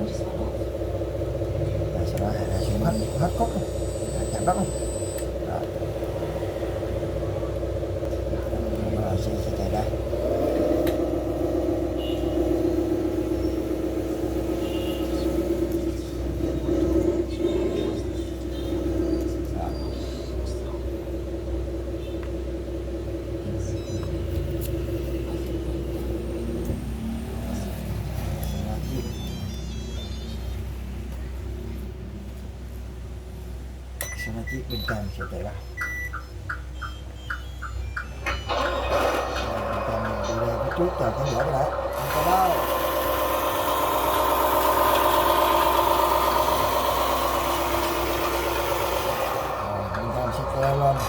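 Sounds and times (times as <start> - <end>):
toy truck motor humming: 39.1 - 49.8.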